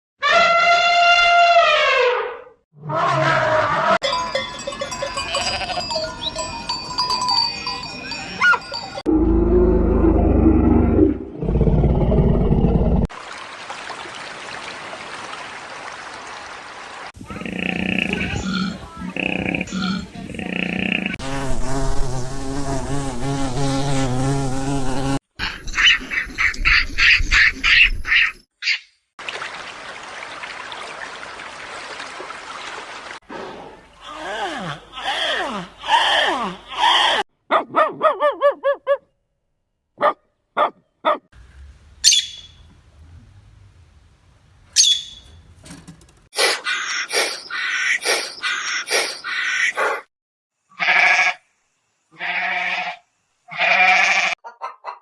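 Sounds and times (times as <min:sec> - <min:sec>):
sharp high-pitched animal calls: 0:04.0 - 0:09.0, 0:42.0 - 0:42.6, 0:44.8 - 0:45.4
animal bleating: 0:04.1 - 0:07.2, 0:50.7 - 0:51.4, 0:52.2 - 0:54.4
flying insect buzzing: 0:21.2 - 0:25.2
animal yelps: 0:34.1 - 0:39.0, 0:40.0 - 0:41.3, 0:53.5 - 0:55.0
short high chirps: 0:42.0 - 0:42.6, 0:44.8 - 0:45.4.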